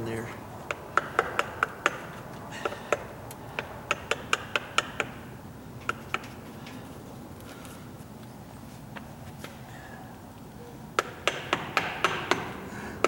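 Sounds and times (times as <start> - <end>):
hammer tapping wood chisel: 0.6 - 6.9, 11.0 - 13.0.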